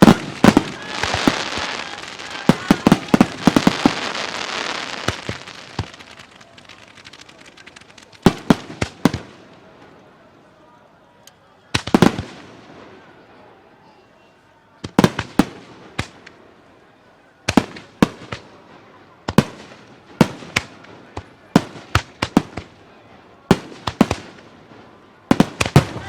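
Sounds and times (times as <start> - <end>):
firework shells bursting: 0.0 - 9.3.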